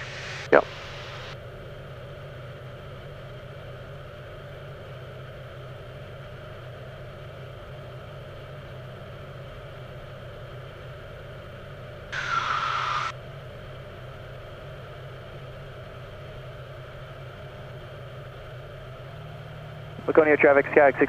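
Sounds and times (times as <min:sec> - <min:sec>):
radio noise burst: 0:00.0 - 0:01.4, 0:12.2 - 0:13.1
propeller plane engine droning: 0:00.0 - 0:21.0.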